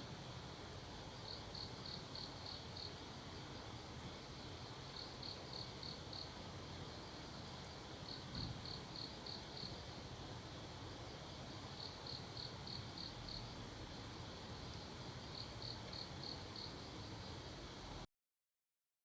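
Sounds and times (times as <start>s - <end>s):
insect chirping: 1.1s - 3.1s, 4.9s - 6.4s, 8.0s - 9.9s, 11.1s - 13.6s, 15.2s - 17.5s.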